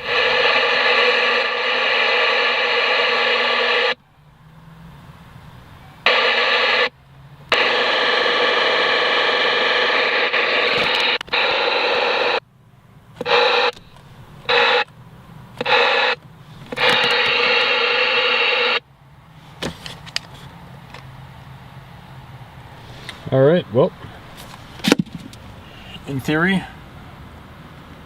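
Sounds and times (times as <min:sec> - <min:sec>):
radio static hiss: 0:00.0 - 0:04.0, 0:06.0 - 0:12.5, 0:13.2 - 0:14.9, 0:15.5 - 0:18.9, 0:22.8 - 0:26.8.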